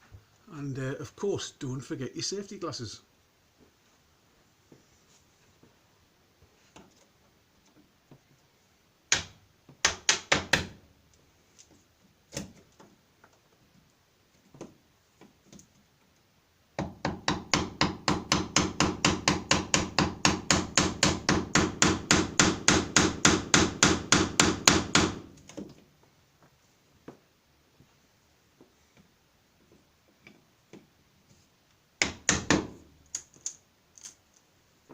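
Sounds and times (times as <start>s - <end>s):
hammer striking chisel into wood: 9.1s - 10.8s, 16.8s - 25.3s, 32.0s - 32.8s.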